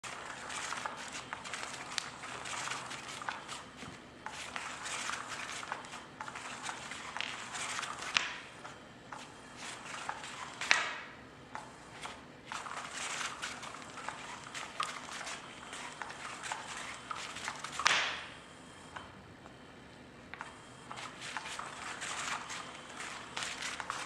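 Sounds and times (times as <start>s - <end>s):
cat scratching and rustling: 0.1s - 8.2s, 12.0s - 17.9s, 20.9s - 24.0s.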